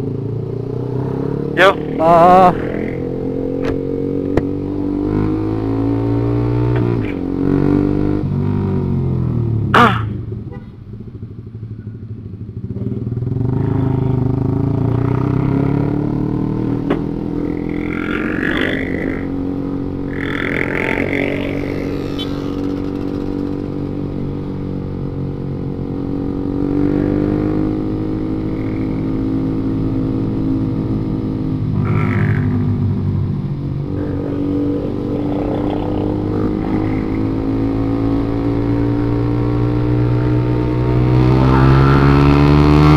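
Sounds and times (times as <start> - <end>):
motorcycle engine running: 0.0 - 42.9
road traffic: 0.0 - 42.9.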